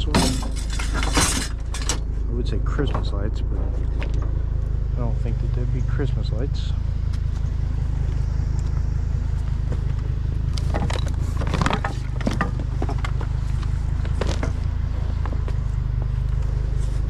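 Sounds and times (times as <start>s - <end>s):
scrap clicking and rattling: 0.0s - 2.1s, 10.5s - 14.7s
vehicle engine idling: 0.0s - 17.0s.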